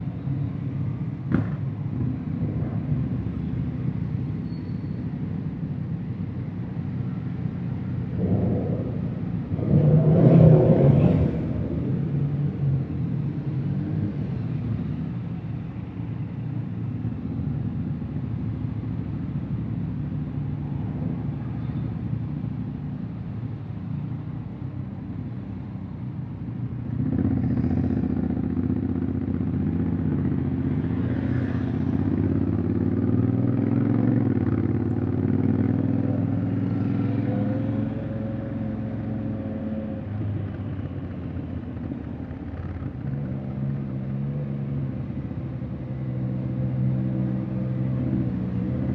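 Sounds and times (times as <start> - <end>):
engine revving: 8.2 - 11.8.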